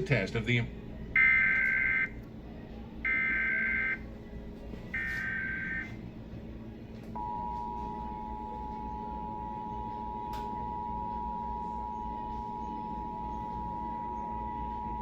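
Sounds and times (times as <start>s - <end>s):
two-tone alert signal: 1.2s - 2.1s, 3.1s - 4.0s, 4.9s - 6.0s.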